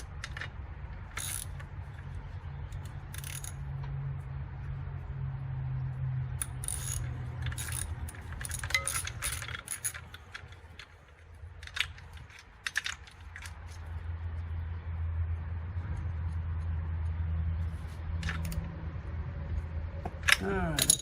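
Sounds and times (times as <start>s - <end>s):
metallic clinks of tools: 6.4s - 10.5s, 20.2s - 21.0s.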